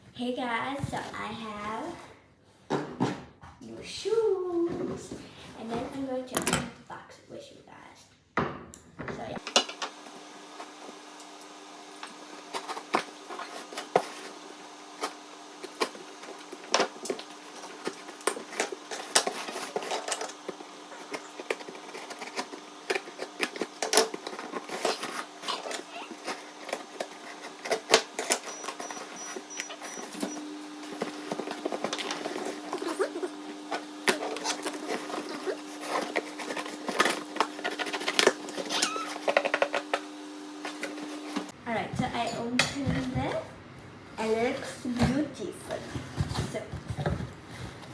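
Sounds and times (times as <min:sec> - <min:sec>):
cardboard box being handled: 0:15.1 - 0:39.4.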